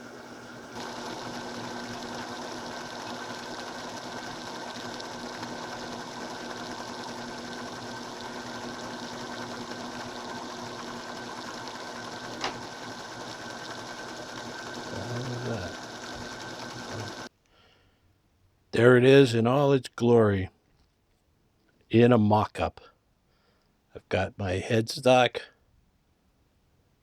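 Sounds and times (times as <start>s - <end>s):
lathe motor and belt running: 0.0s - 17.3s.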